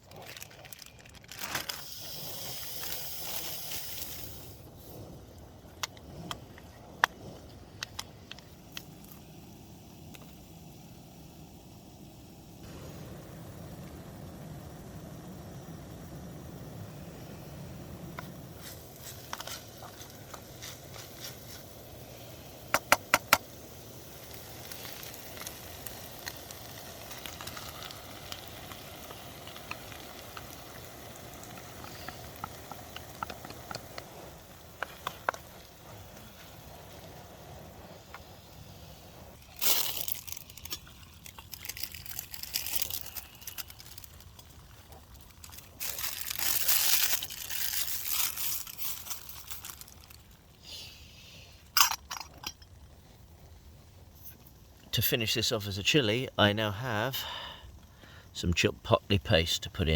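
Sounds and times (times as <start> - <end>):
food sizzling in a pan: 1.4 - 5.0, 8.6 - 54.4.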